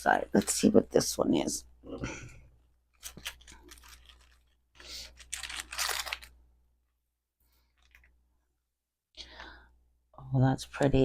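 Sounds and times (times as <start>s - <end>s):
package wrapping crinkling and tearing: 2.9s - 6.4s, 7.7s - 8.2s.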